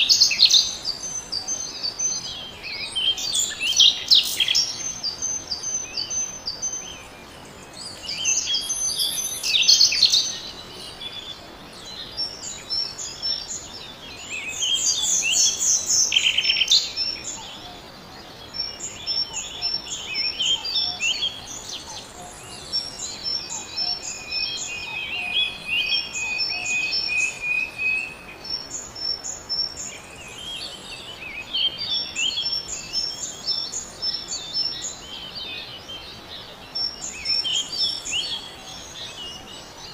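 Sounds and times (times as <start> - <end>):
birds chirping and singing: 0.0 - 39.9.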